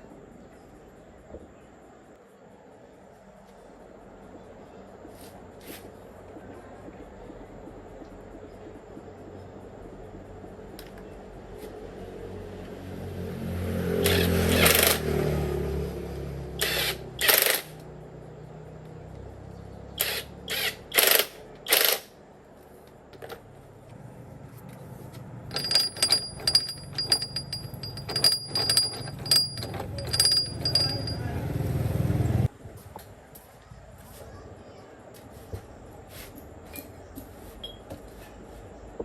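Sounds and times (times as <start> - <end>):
low mechanical hum: 0.0 - 12.8, 15.7 - 39.0
metallic clinks and taps: 25.5 - 31.6.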